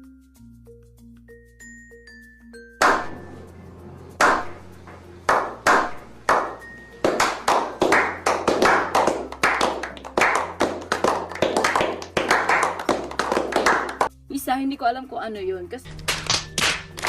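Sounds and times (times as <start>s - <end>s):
clap-like percussion: 2.8s - 3.5s, 4.1s - 14.2s, 15.9s - 17.0s.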